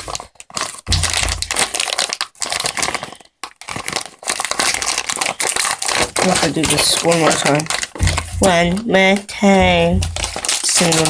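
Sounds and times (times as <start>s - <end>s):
wrapping crinkling: 0.0s - 11.0s
dull bump: 0.9s - 2.0s, 6.4s - 11.0s.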